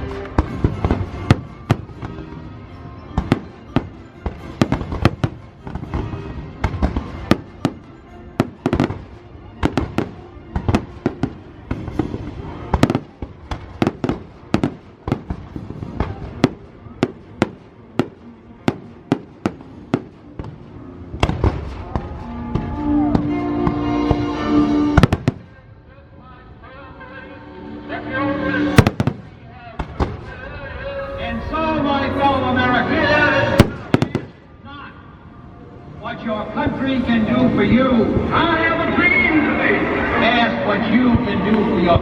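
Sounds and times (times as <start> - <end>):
fireworks bursting: 3.2 - 25.5, 28.8 - 30.4, 33.5 - 34.4
loud firework reports: 3.2 - 26.9, 28.3 - 42.0.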